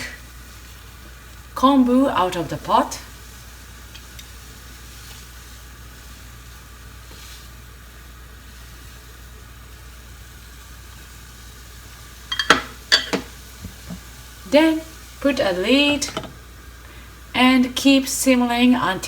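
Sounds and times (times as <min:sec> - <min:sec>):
pot boiling and bubbling: 0:00.0 - 0:19.0
utensil clinking against pot: 0:12.3 - 0:13.3.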